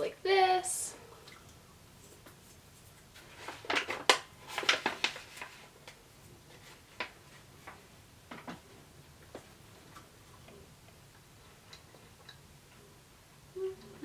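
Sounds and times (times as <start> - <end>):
handling crinkles and clicks: 3.4 - 6.0.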